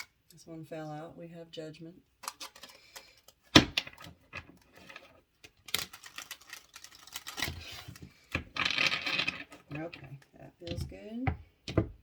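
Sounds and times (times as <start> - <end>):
cards being shuffled: 2.2 - 10.1.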